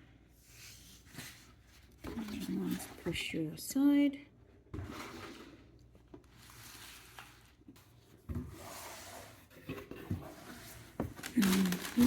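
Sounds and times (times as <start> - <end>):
packaging rubbing and shuffling: 10.3 - 12.0.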